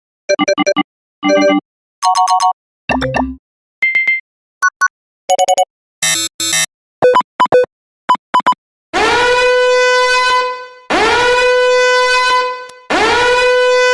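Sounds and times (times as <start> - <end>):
short electronic beeps: 5.3 - 8.6
buzzy horn-like warning tone: 6.0 - 6.7.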